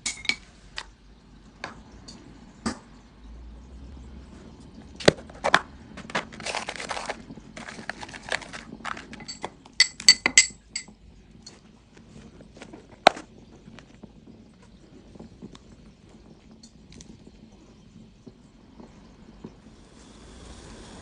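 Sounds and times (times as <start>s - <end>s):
dishes clinking together: 9.1s - 10.9s.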